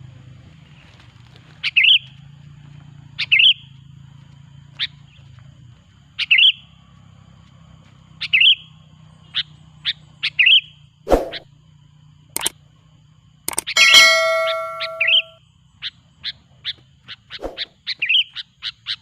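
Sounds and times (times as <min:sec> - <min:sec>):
sharp knock: 0:13.5 - 0:15.3
bulbul calling: 0:13.5 - 0:15.4.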